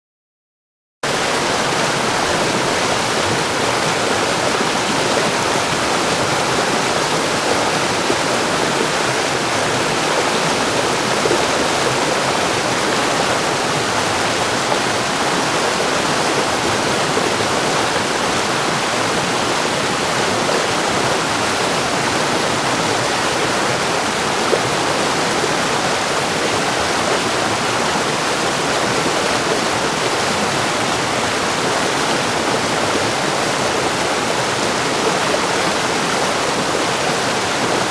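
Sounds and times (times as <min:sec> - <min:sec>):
river rapids roaring: 0:01.1 - 0:37.9.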